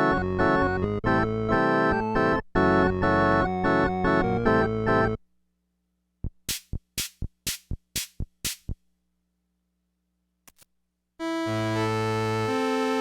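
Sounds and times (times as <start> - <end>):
faint steady hum: 5.2 - 6.3
drum machine beat: 6.2 - 8.8.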